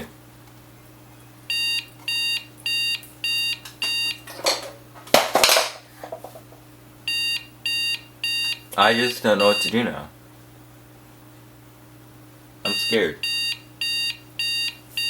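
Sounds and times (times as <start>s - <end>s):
electronic alarm beeping: 1.5s - 4.2s, 7.1s - 9.8s, 12.7s - 15.0s.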